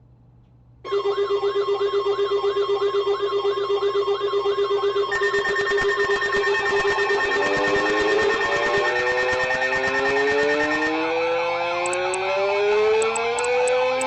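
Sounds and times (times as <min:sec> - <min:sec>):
pulsing lower tone: 0:05.1 - 0:12.3.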